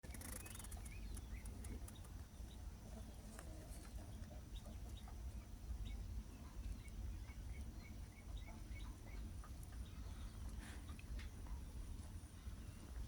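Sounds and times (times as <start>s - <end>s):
bird chirps: 0.0s - 3.3s, 4.0s - 10.7s.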